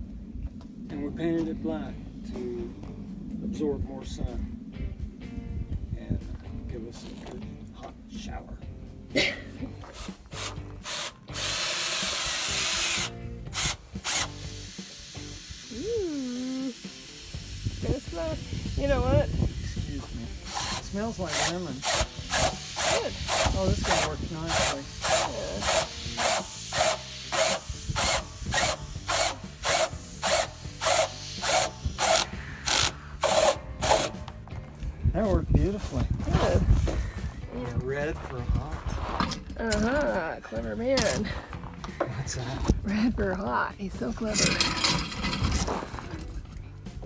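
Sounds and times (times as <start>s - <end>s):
power drill boring: 9.8s - 17.2s, 20.4s - 34.2s
hand tool rasping a surface: 20.5s - 34.2s.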